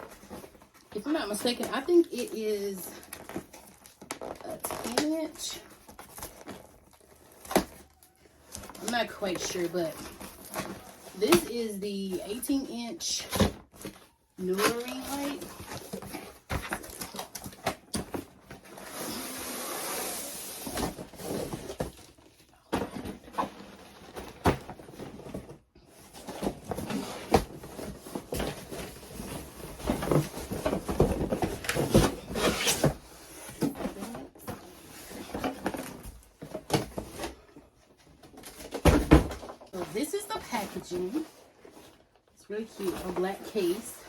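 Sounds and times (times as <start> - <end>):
packaging rustling and scraping: 0.0 - 44.0.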